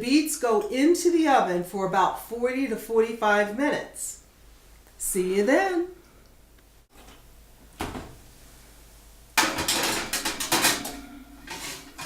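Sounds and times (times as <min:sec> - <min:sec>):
metal pan knocking: 0:09.4 - 0:12.0
pans rattling and clanking: 0:09.4 - 0:12.0.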